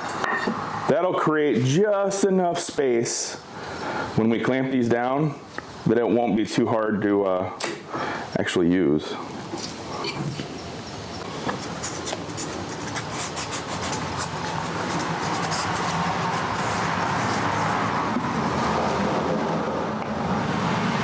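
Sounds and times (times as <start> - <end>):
steady rushing noise: 11.7 - 21.0.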